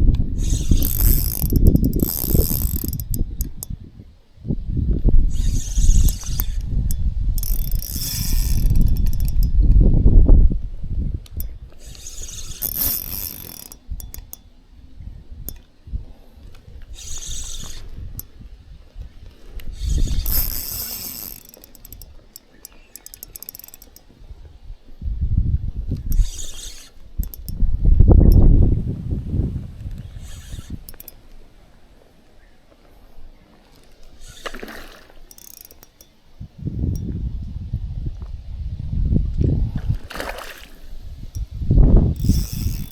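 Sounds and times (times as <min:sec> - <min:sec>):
microphone handling rustle and clicks: 0:00.0 - 0:14.4
wind buffeting microphone: 0:00.0 - 0:22.2, 0:23.9 - 0:31.1, 0:36.3 - 0:42.9
fishing reel ratchet clicking: 0:00.1 - 0:03.9, 0:05.2 - 0:09.9, 0:11.2 - 0:15.7, 0:16.8 - 0:18.5, 0:19.4 - 0:24.2, 0:25.9 - 0:28.5, 0:29.9 - 0:31.4, 0:34.1 - 0:37.2, 0:40.2 - 0:42.9.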